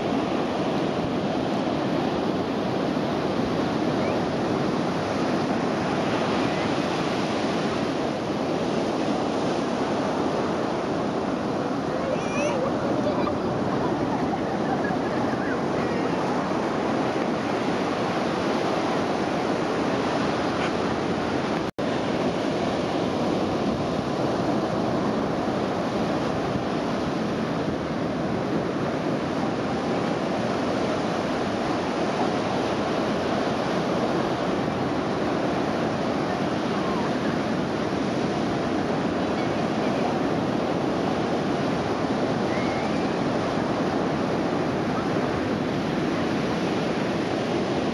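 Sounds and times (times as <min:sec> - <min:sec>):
waves breaking on beach: 0:00.0 - 0:47.9
wind buffeting microphone: 0:00.0 - 0:47.9.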